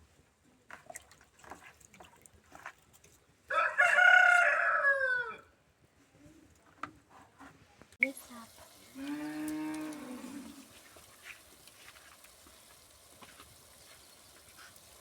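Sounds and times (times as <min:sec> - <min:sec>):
cow mooing: 0:09.0 - 0:10.6.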